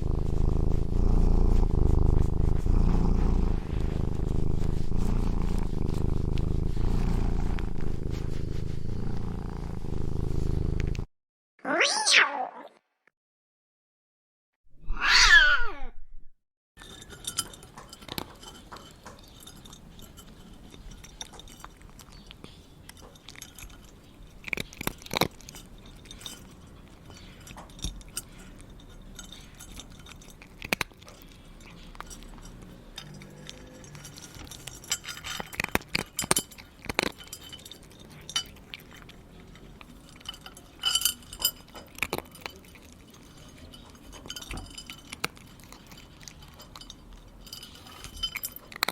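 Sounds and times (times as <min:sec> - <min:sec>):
cat crunching dry food: 0:00.0 - 0:11.0, 0:16.8 - 0:48.9
cat meowing: 0:11.6 - 0:12.8, 0:14.8 - 0:16.0
kibble clinking against dish: 0:16.8 - 0:48.9.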